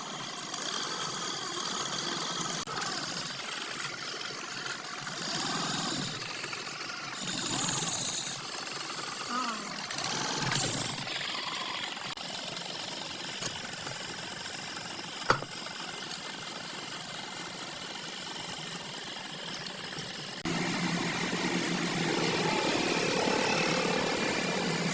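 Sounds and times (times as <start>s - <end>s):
wood lathe humming: 0.0s - 10.4s, 16.0s - 24.9s.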